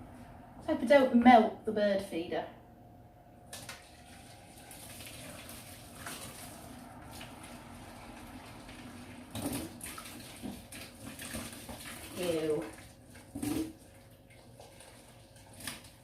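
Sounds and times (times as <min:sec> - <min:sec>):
water pouring into plastic feeder: 0:03.5 - 0:16.0.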